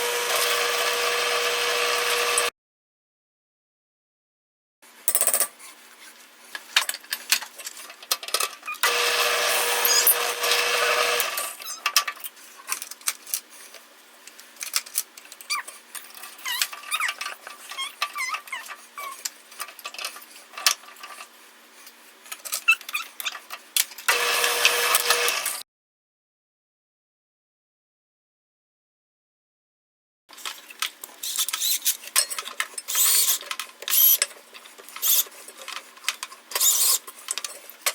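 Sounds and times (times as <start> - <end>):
power tool cutting wood: 0.0 - 2.5, 8.8 - 11.6, 24.1 - 25.6
power tool motor humming: 0.0 - 2.5, 8.8 - 11.6, 24.1 - 25.6.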